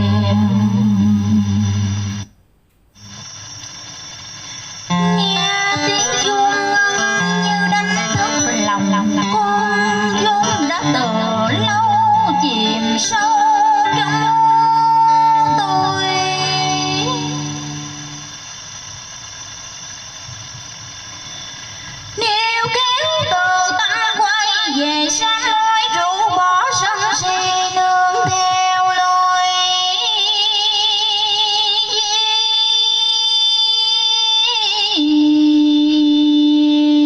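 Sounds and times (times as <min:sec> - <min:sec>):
solo voice singing with vibrato: 0:04.9 - 0:18.2, 0:22.2 - 0:37.0.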